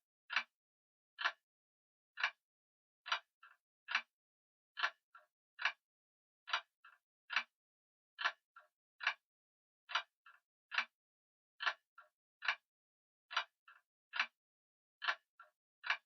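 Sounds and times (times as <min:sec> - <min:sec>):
clock ticking: 0:01.2 - 0:01.4, 0:03.9 - 0:04.1, 0:04.8 - 0:05.0, 0:13.3 - 0:14.4, 0:15.0 - 0:15.2.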